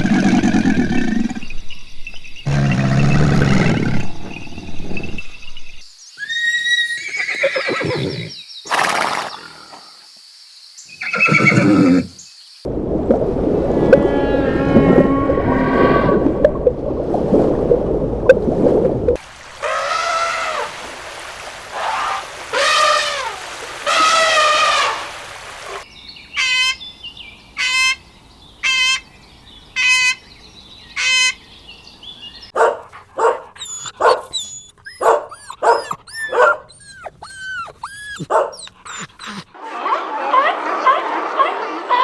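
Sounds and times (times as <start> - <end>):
rapid yelps or chirps: 32.6 - 39.5
drawn-out animal calls: 32.6 - 39.6
short high animal calls: 33.6 - 39.4.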